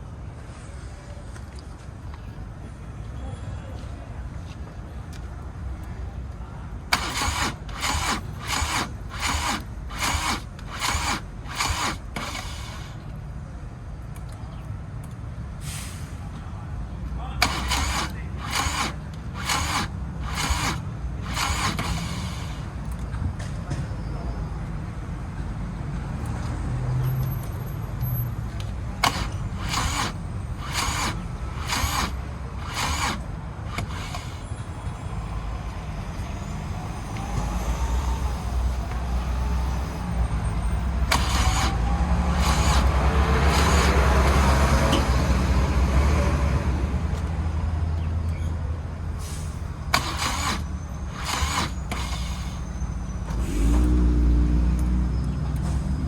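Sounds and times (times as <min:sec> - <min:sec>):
street traffic rumble: 0:00.0 - 0:56.0
sharp clicks: 0:17.4 - 0:23.2, 0:28.5 - 0:34.5.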